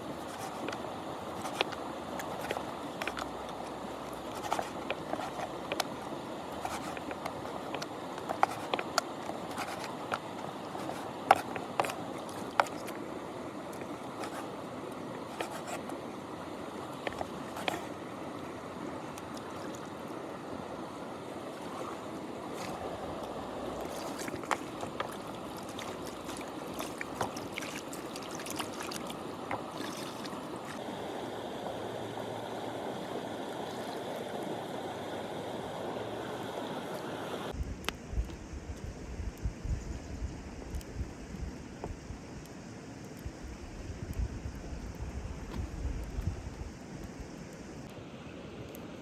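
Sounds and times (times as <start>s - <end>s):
river water flowing: 0.0s - 37.6s.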